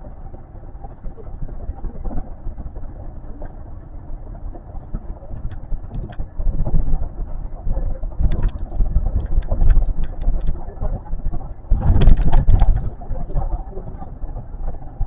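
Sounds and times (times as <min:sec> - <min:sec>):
train running rumble: 0:00.0 - 0:15.0
clicks and knocks: 0:05.4 - 0:06.3, 0:08.2 - 0:10.6.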